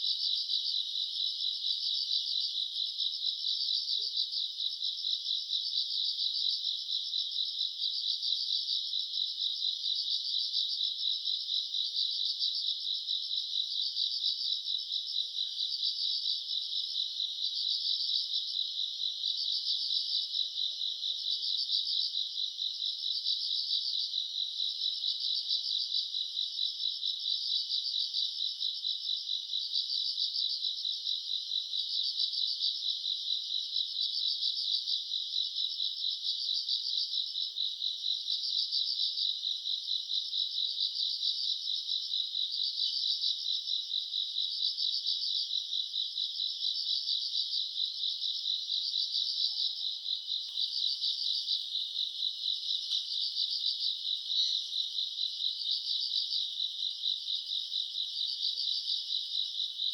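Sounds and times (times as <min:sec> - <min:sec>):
crickets trilling: 0:48.6 - 0:59.9.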